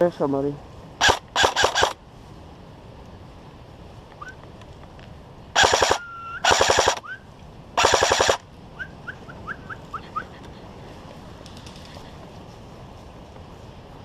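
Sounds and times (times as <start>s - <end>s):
airsoft rifle firing bursts: 1.0s - 2.0s, 5.6s - 7.0s, 7.8s - 8.4s.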